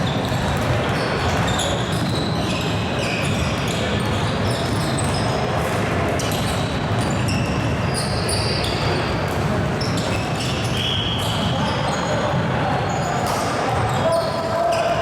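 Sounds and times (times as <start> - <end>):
basketball bouncing on court: 0.0 - 2.2
crowd hubbub: 0.0 - 15.0
sneakers squeaking: 0.0 - 15.0.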